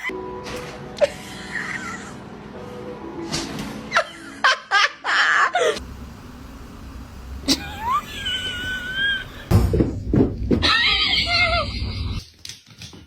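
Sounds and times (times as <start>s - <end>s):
background music: 0.0s - 5.6s
person laughing: 1.0s - 2.2s, 3.9s - 5.8s, 7.4s - 9.5s, 10.6s - 12.2s.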